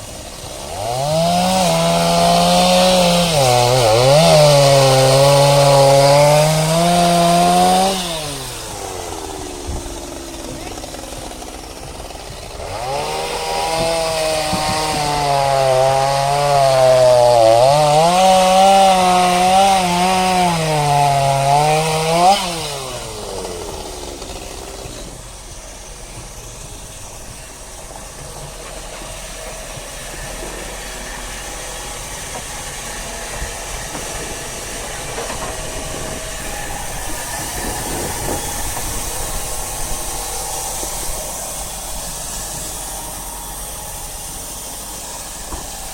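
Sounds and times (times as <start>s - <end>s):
low steady mechanical running: 0.0s - 3.0s, 8.2s - 13.8s, 22.7s - 45.9s
engine running hard: 0.0s - 45.9s.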